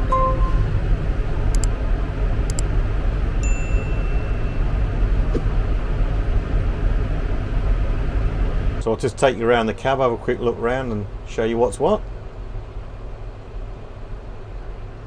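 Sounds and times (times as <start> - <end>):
short electronic beep: 0.0 - 0.8.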